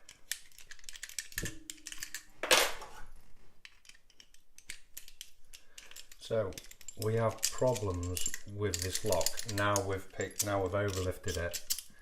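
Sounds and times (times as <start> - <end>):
lock-pick metallic clicks and rattles: 0.0 - 2.3, 3.6 - 12.0.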